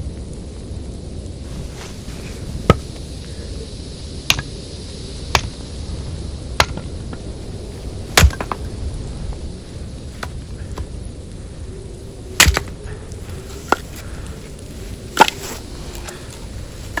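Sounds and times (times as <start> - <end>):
wind rumble on microphone: 0.0 - 17.0
sharp knocks: 1.6 - 3.0, 8.1 - 8.7, 12.4 - 12.7.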